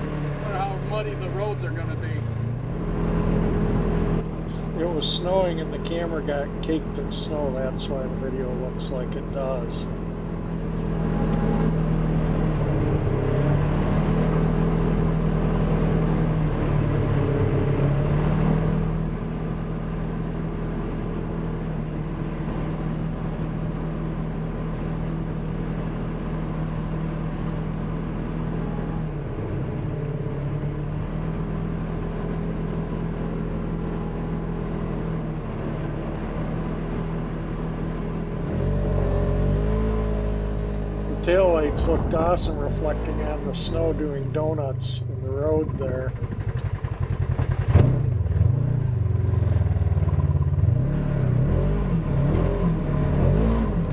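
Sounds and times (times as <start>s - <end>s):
engine running under throttle: 0.0s - 53.9s.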